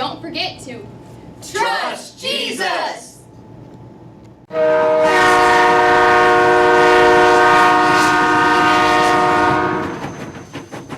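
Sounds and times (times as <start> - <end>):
train horn chord: 4.5 - 10.0.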